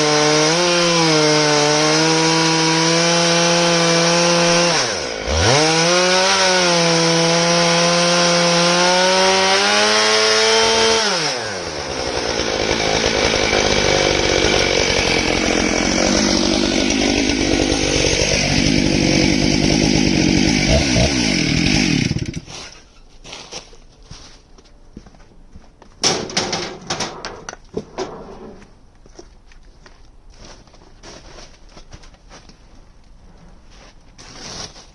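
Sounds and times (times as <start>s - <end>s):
chainsaw sawing wood: 0.0s - 22.9s.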